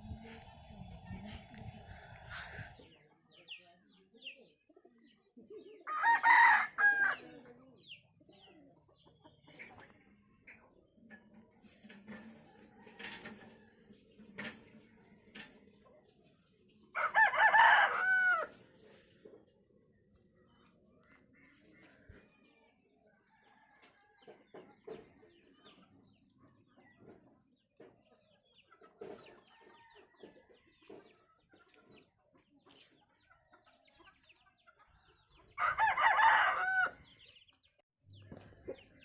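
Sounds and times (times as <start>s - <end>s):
rooster crowing: 5.9s - 7.2s, 17.0s - 18.5s, 35.6s - 37.0s.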